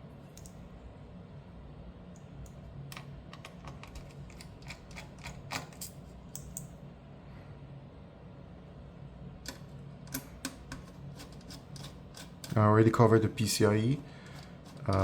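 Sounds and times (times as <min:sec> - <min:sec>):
steady low hum: 0:00.0 - 0:15.0
screwdriver clicks and taps on metal: 0:09.5 - 0:10.9.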